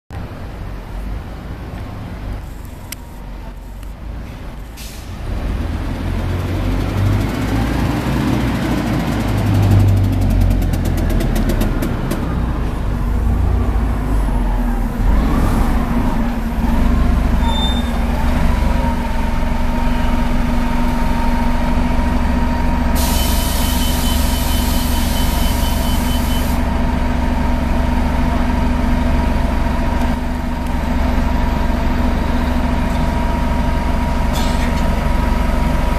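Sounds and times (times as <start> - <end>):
bus engine running: 0.2 - 35.9
high transmission whine: 10.4 - 35.9
air hiss burst: 23.0 - 26.6.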